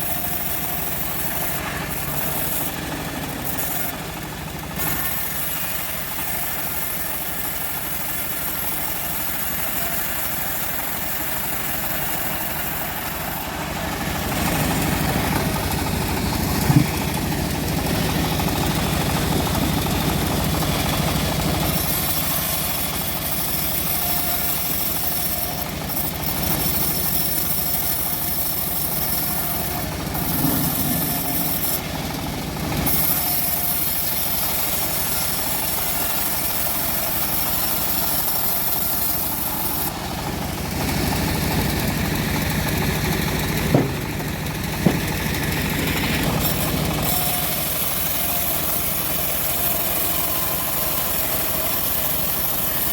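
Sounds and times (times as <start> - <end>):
bandsaw mill sawing wood: 0.0 - 52.9
sharp knock: 43.7 - 45.2.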